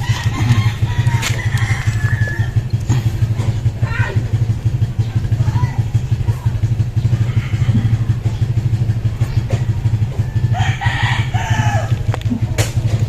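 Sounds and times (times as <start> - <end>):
rooster crowing: 0.0 - 2.8, 9.6 - 12.2
engine pulsing drone: 0.0 - 13.0.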